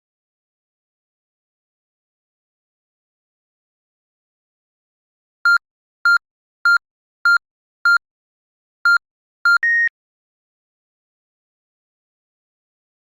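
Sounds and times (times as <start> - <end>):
short electronic beeps: 5.4 - 8.0, 8.8 - 9.9
long high-pitched beep: 8.9 - 9.9.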